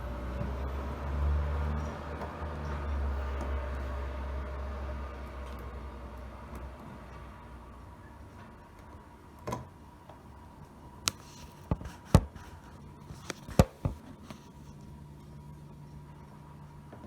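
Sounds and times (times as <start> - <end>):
faint steady hum: 2.6 - 17.0.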